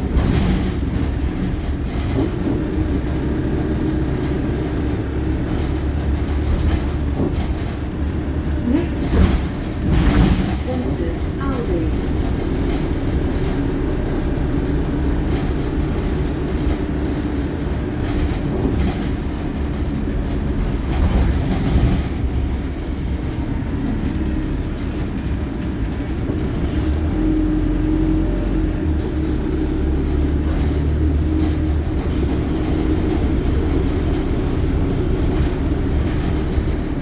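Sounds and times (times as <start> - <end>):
diesel engine and road rumble: 0.0 - 37.0.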